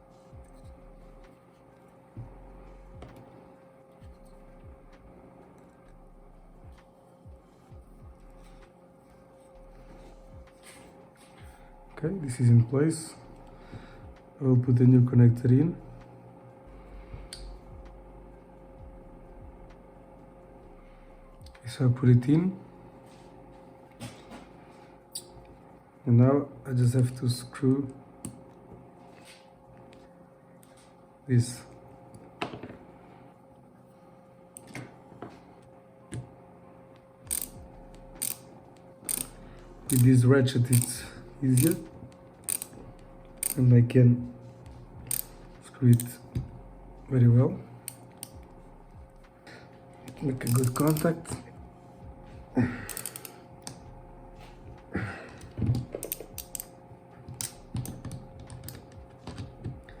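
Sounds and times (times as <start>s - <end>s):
hand tools and metal parts clicking: 37.3s - 42.8s, 43.4s - 43.7s, 45.0s - 46.3s, 47.8s - 48.4s, 50.1s - 51.3s, 52.8s - 54.7s, 55.3s - 56.7s, 57.3s - 60.0s.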